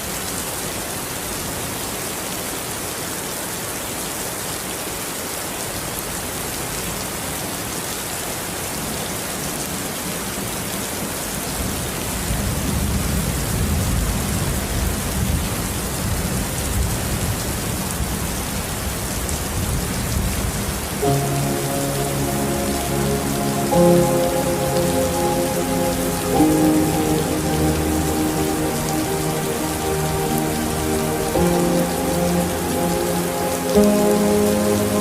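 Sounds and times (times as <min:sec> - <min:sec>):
steady rain hissing: 0:00.0 - 0:35.0
soft sustained music notes: 0:21.0 - 0:35.0.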